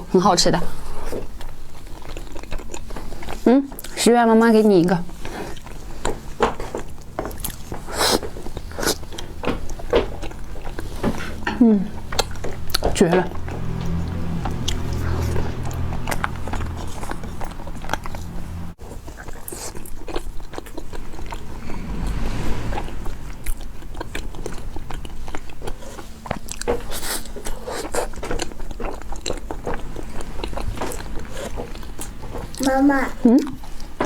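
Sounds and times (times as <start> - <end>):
person chewing: 1.0 - 4.0, 18.9 - 21.4, 24.8 - 32.6
low hum: 20.8 - 26.0.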